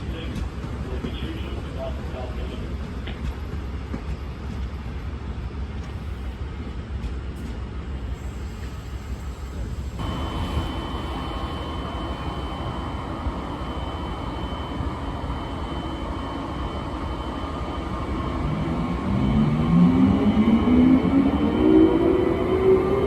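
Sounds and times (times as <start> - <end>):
train rumbling: 0.0 - 23.0
high whine: 10.0 - 23.0
whine rising in pitch: 10.0 - 23.0.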